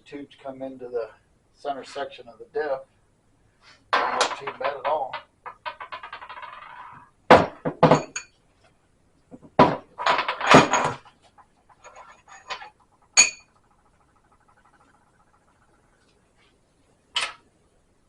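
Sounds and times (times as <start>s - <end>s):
metal tools clinking: 7.9s - 8.3s, 11.8s - 13.6s.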